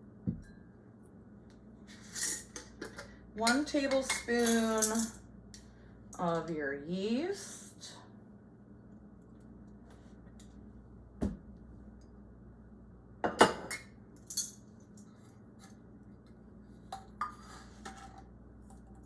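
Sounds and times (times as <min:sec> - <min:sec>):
utensils clinking against bowl: 0:02.1 - 0:05.2.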